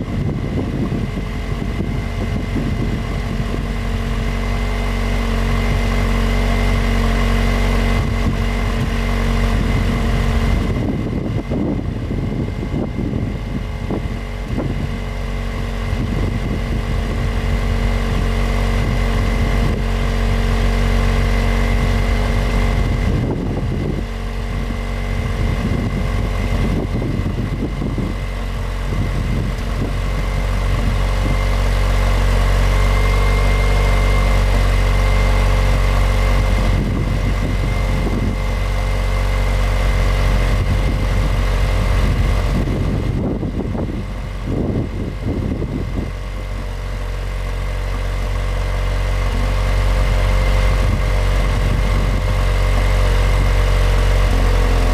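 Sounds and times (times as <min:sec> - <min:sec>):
car engine idling: 0:00.0 - 0:54.9
irregular low rumbling: 0:00.0 - 0:54.9.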